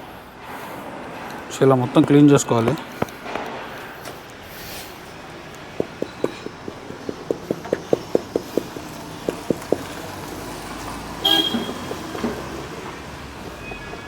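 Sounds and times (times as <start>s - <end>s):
vehicle horn toot: 11.2s - 12.3s.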